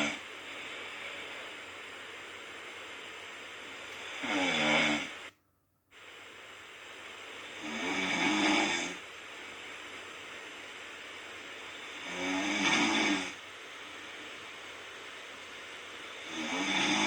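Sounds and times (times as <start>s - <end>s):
steady background hiss: 0.0s - 17.0s
person snoring: 4.1s - 5.2s, 7.6s - 9.0s, 11.9s - 13.4s, 16.2s - 17.0s.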